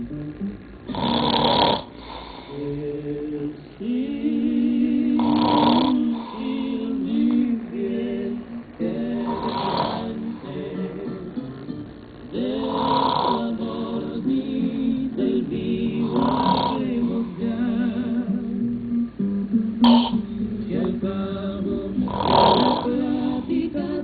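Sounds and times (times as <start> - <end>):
music with singing: 0.0 - 24.0
man snoring: 0.9 - 2.7, 5.1 - 6.8, 9.1 - 10.5, 12.5 - 13.6, 16.0 - 17.0, 19.8 - 20.2, 22.0 - 23.2.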